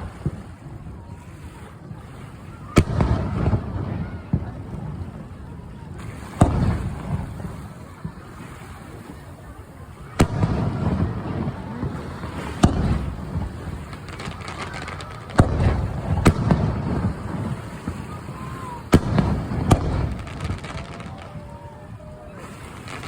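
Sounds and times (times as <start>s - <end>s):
fireworks bangs: 0.0s - 23.0s.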